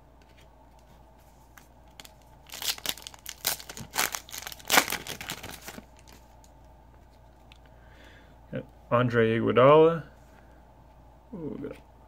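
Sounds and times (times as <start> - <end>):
wrapper being torn and crinkled: 1.9 - 6.2.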